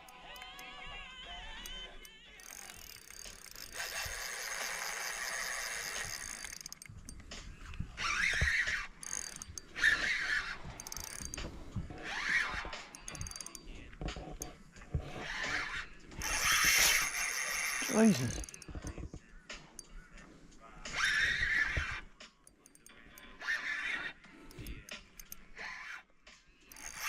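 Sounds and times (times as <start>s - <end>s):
fishing reel drag zinging: 1.4s - 13.8s, 15.2s - 19.0s, 20.9s - 22.0s, 22.6s - 26.0s, 26.7s - 27.0s.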